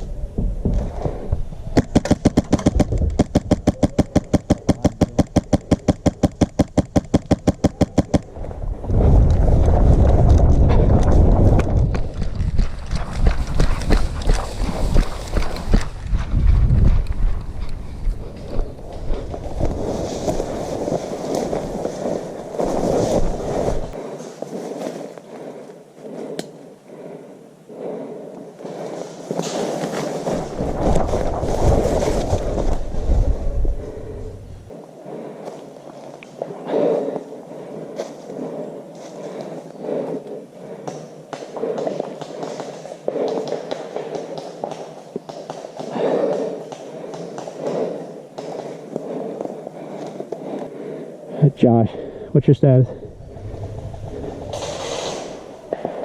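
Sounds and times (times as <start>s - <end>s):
low rumbling noise: 0.0s - 24.0s, 30.4s - 34.8s, 51.5s - 56.0s
airsoft rifle shots: 1.8s - 8.3s.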